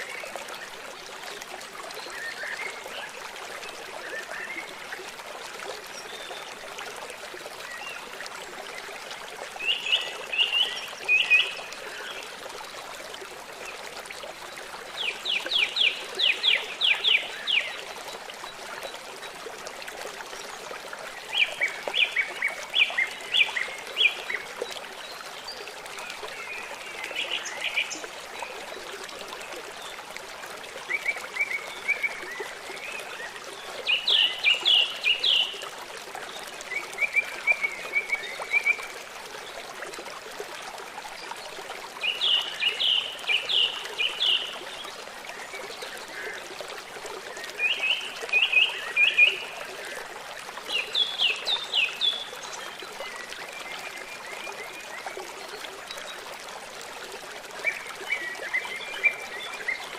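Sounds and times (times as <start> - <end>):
stream trickling: 0.0 - 59.9.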